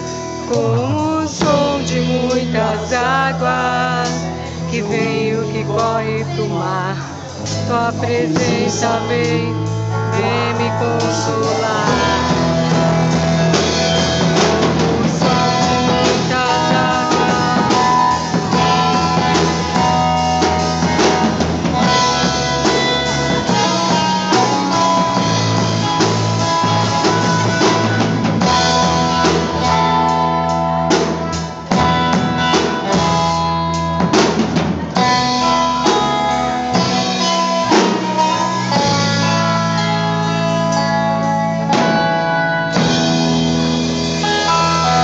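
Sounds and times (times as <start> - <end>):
electric guitar chords: 0.0 - 45.0
live band playing: 0.0 - 45.0
drum hits: 11.0 - 30.3.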